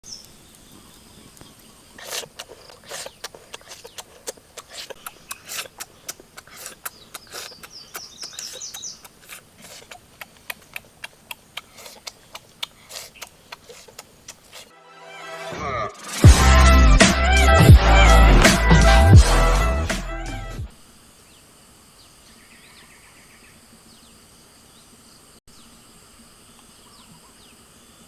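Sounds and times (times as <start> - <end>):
sharp clicks and snaps: 1.3 - 14.7
high bird-like chirps: 6.6 - 9.1.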